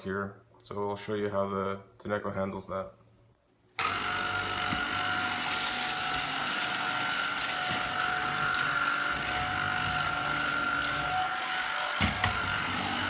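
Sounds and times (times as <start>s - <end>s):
stick vacuum whining: 3.8s - 13.0s
grit rattling up vacuum wand: 5.1s - 11.3s.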